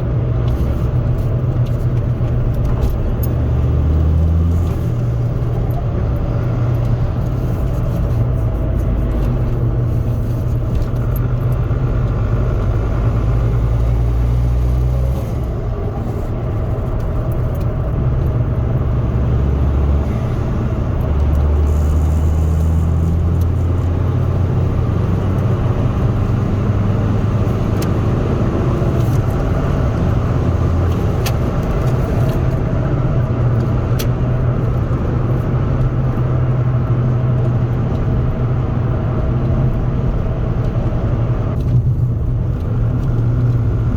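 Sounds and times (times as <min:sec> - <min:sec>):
diesel engine inside car cabin: 0:00.0 - 0:43.9
road noise: 0:00.0 - 0:43.9.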